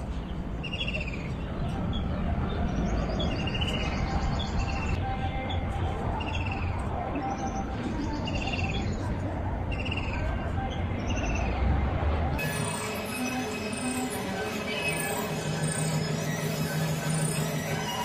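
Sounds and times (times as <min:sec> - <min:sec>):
songbirds chirping: 0:00.0 - 0:12.0.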